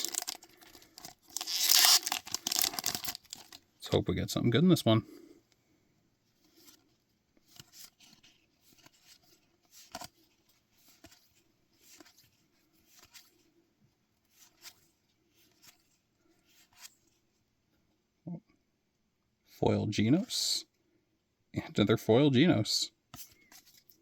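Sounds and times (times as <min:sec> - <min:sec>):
cards rustling and flicking: 0:00.0 - 0:03.6, 0:06.4 - 0:13.5, 0:14.2 - 0:17.2, 0:23.1 - 0:24.0.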